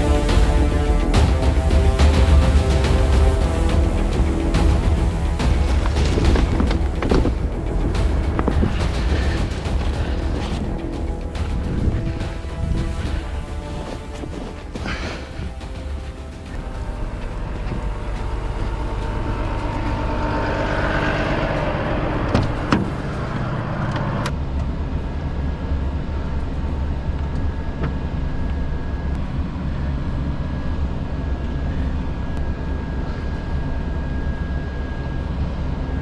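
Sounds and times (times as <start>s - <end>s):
truck engine droning: 0.0s - 24.4s
road rumble: 0.0s - 34.5s.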